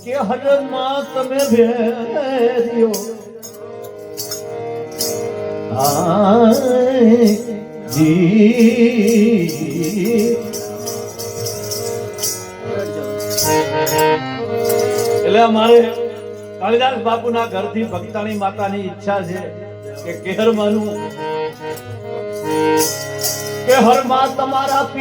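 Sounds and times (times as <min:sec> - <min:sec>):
man singing devotional song: 0:00.0 - 0:04.7, 0:05.5 - 0:13.9, 0:14.7 - 0:25.0
hand cymbals jingling: 0:00.0 - 0:25.0
sustained instrumental accompaniment: 0:00.0 - 0:25.0.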